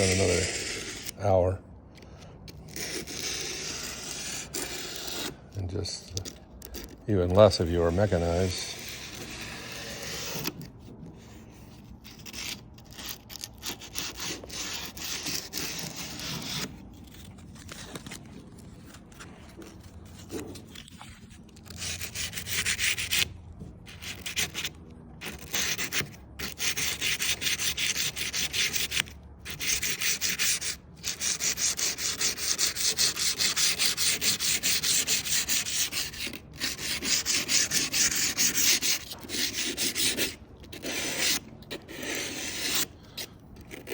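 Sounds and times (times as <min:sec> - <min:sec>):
emery cloth sanding metal edge: 0:29.5 - 0:42.9.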